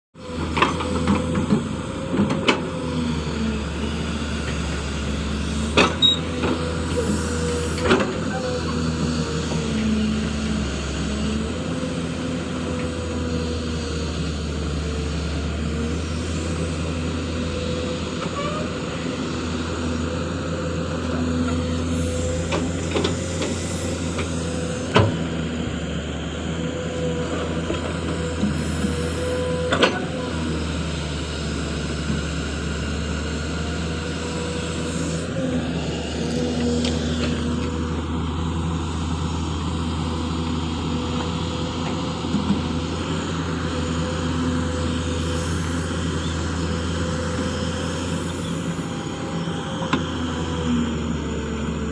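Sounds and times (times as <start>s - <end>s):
diesel engine running: 0.2s - 51.9s
wavering hydraulic whine: 26.8s - 51.8s.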